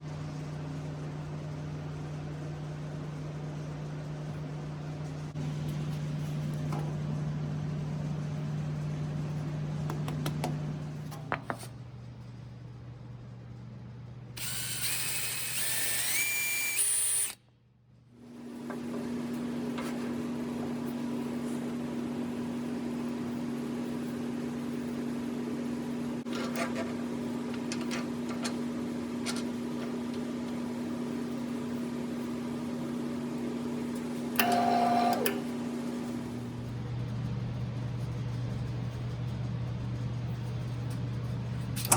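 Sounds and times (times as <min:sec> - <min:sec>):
wood lathe motor whine: 0:14.4 - 0:17.4.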